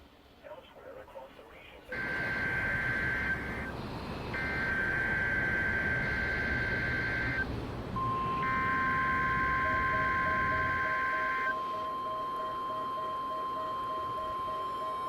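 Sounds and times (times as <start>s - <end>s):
radio static hiss: 0.0s - 7.7s
digital data tones: 1.9s - 15.0s
steady warning alarm tone: 1.9s - 15.0s.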